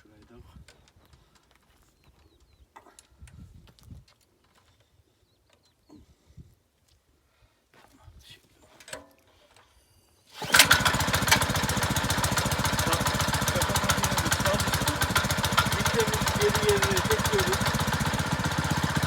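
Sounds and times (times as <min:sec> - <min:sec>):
small petrol engine running: 0:10.4 - 0:19.0.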